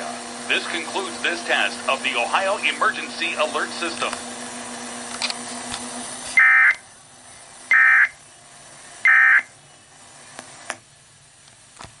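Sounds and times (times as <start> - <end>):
screeching digital tone bursts: 6.4 - 6.8, 7.7 - 8.2, 9.0 - 9.5.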